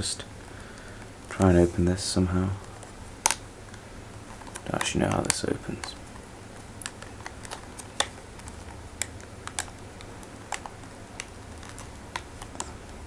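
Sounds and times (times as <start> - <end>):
faint low hum: 0.0 - 13.0
plastic packaging clicks: 3.2 - 13.0.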